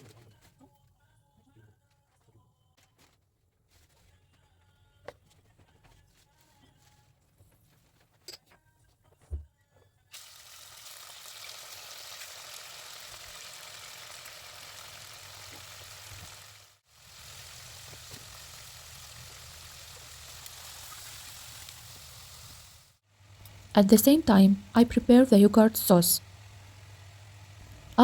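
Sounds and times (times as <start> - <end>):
chicken sizzling in hot oil: 10.1 - 23.7.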